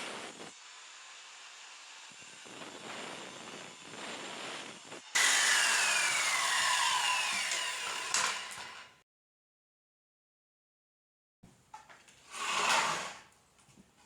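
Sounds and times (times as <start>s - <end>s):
power saw cutting boards: 4.7s - 9.0s, 12.2s - 13.3s.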